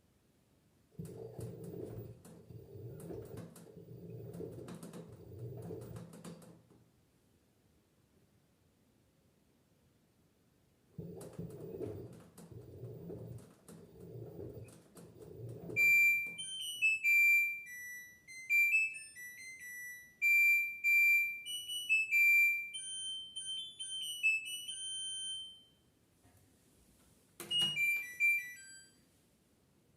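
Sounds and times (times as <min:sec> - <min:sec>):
washing machine rumbling: 0:01.0 - 0:06.7, 0:11.0 - 0:16.4
electronic beeping melody: 0:14.2 - 0:25.7, 0:27.4 - 0:28.9
short beep tune: 0:15.8 - 0:25.7, 0:27.4 - 0:28.9.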